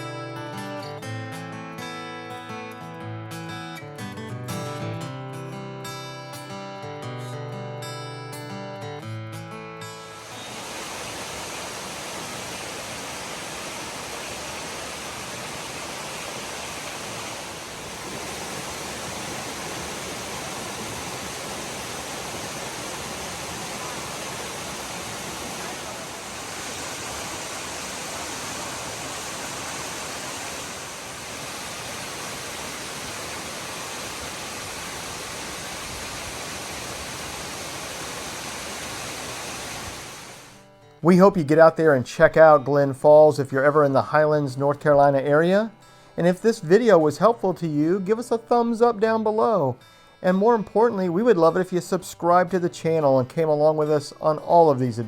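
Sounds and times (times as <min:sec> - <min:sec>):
waterfall rushing: 0:10.0 - 0:40.6.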